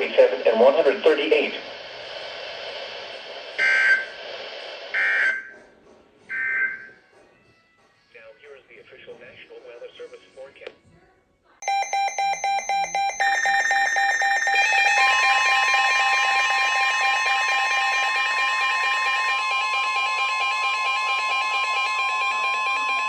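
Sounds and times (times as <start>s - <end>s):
fast electronic beeps: 11.6s - 22.2s
steady alert tone: 11.6s - 23.0s.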